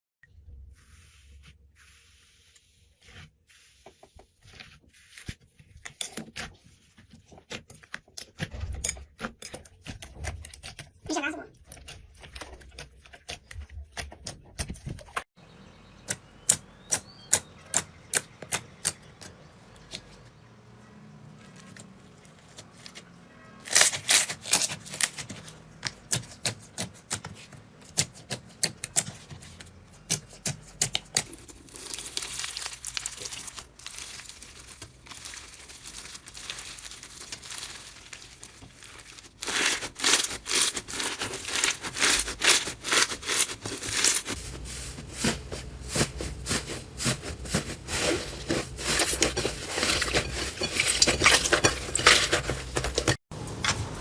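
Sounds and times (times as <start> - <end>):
slime crackling and popping: 30.4 - 44.3.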